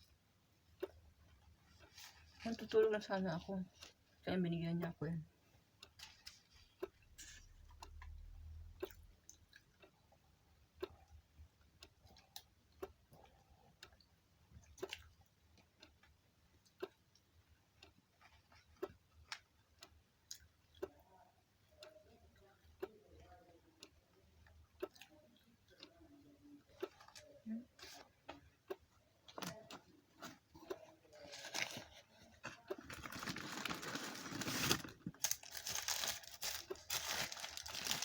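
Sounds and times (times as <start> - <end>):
regular ticking: 0.0 - 1.9, 6.8 - 22.0, 22.6 - 27.6, 28.2 - 29.9.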